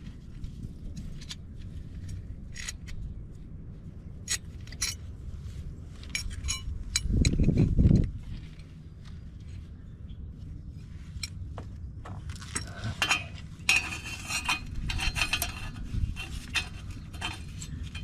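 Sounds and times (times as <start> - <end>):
metal tools clinking: 12.4 - 18.0.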